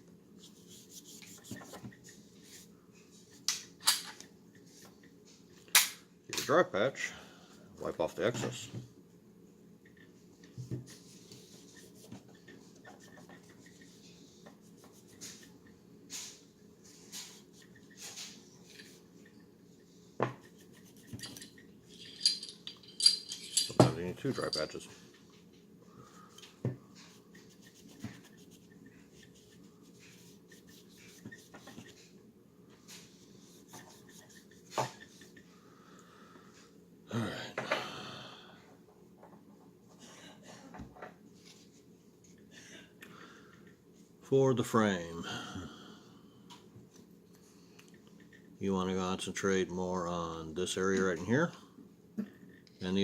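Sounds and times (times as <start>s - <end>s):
cloth patch wiping strokes: 0.4s - 1.6s, 27.0s - 31.7s.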